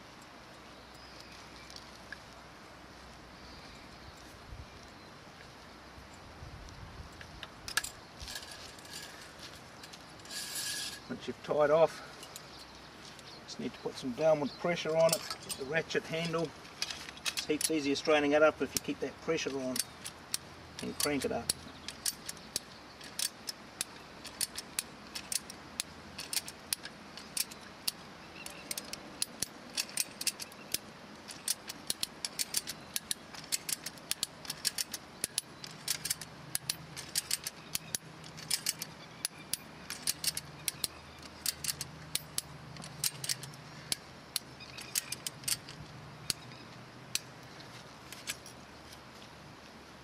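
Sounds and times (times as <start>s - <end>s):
ratchet pawl clicking: 19.7s - 45.7s.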